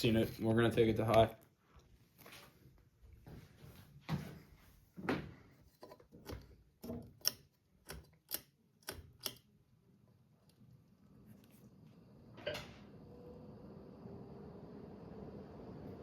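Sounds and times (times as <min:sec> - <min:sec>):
pull-chain switch clicks: 0:06.2 - 0:09.5.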